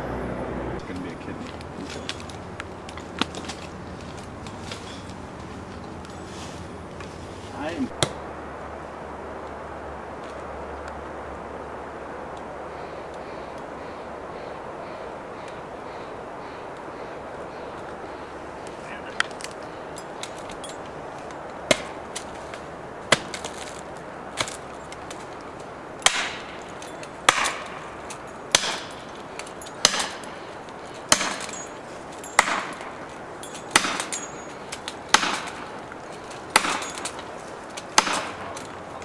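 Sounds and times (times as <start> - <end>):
axe chopping wood: 7.9 - 8.2, 21.6 - 22.3, 23.0 - 23.7, 26.0 - 26.6, 27.2 - 27.8, 28.5 - 29.0, 29.8 - 30.3, 31.1 - 31.6, 32.4 - 33.0, 33.7 - 35.7, 36.5 - 37.1, 37.9 - 38.8.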